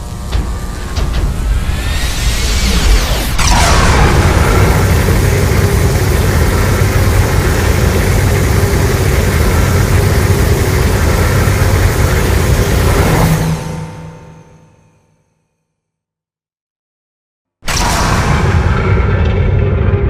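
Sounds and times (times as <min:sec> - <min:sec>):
synthesized monster roar: 0:01.8 - 0:13.9.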